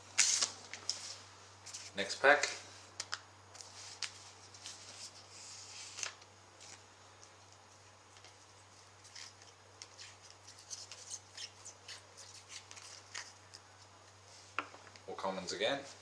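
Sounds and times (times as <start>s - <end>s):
cards clicking and rustling: 9.1s - 13.6s.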